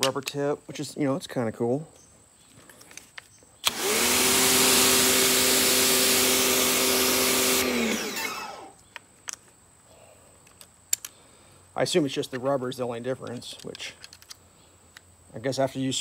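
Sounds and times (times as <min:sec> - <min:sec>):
pump motor humming: 0:03.6 - 0:08.7.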